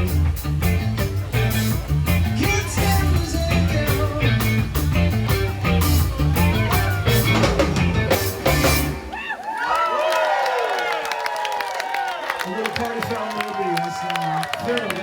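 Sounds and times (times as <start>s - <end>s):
bass guitar: 0.0s - 9.2s
drum kit: 0.0s - 9.2s
electric guitar: 0.0s - 9.2s.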